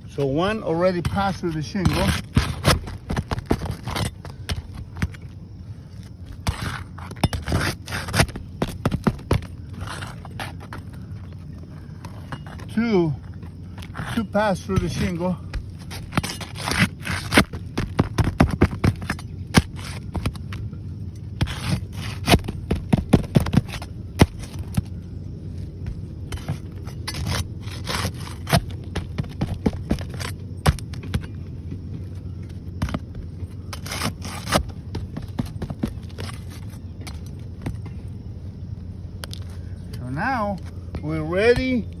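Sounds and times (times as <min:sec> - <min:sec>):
metal tool scraping shingles: 0:00.4 - 0:05.3, 0:06.3 - 0:10.8, 0:13.7 - 0:20.6, 0:21.2 - 0:22.7, 0:26.2 - 0:28.8, 0:33.7 - 0:34.7.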